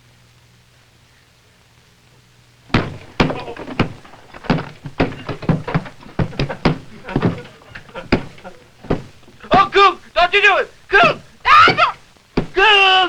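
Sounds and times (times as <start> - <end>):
faint mains hum: 0.0 - 13.0
knocks and thuds on wood: 2.7 - 13.0.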